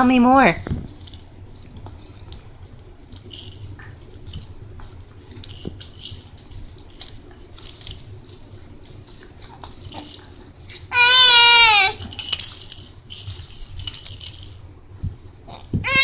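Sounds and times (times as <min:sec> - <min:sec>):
handheld rattle shaken: 0:00.9 - 0:01.3, 0:03.1 - 0:04.6, 0:05.2 - 0:14.7.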